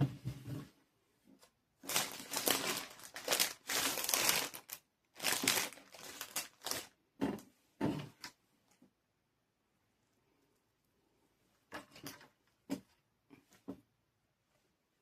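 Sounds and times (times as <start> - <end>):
plastic flowers rustling and crinkling: 1.4 - 7.0.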